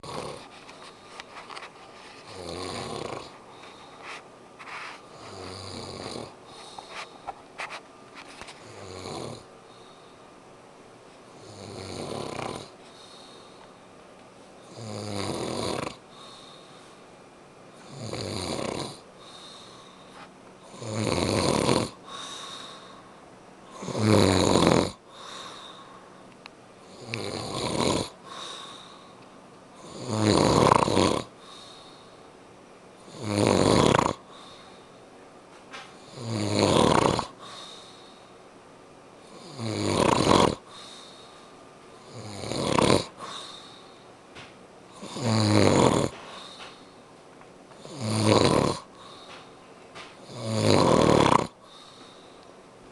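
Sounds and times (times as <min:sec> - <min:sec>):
man snoring: 0:00.0 - 0:00.5, 0:02.3 - 0:03.4, 0:05.1 - 0:06.8, 0:08.6 - 0:09.5, 0:11.4 - 0:13.3, 0:14.7 - 0:16.4, 0:17.8 - 0:19.6, 0:20.7 - 0:22.9, 0:23.7 - 0:25.8, 0:26.8 - 0:29.0, 0:29.8 - 0:31.8, 0:33.1 - 0:34.5, 0:36.0 - 0:37.8, 0:39.2 - 0:41.1, 0:42.0 - 0:43.8, 0:44.9 - 0:46.6, 0:47.8 - 0:49.2, 0:50.2 - 0:52.0
quiet breathing: 0:00.0 - 0:10.4, 0:12.7 - 0:14.0, 0:16.0 - 0:17.1, 0:19.0 - 0:20.8, 0:21.9 - 0:24.0, 0:25.0 - 0:30.0, 0:31.2 - 0:32.4, 0:34.2 - 0:35.1, 0:37.2 - 0:38.5, 0:40.4 - 0:42.2, 0:43.1 - 0:44.2, 0:45.9 - 0:47.1, 0:48.8 - 0:50.4, 0:51.5 - 0:52.6.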